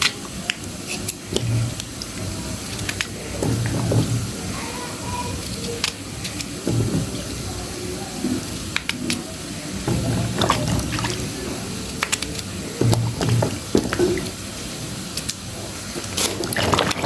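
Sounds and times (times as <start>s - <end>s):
water splashing and pouring: 9.7s - 17.0s
objects clicking and knocking: 9.8s - 11.3s, 11.9s - 14.4s, 16.0s - 17.0s.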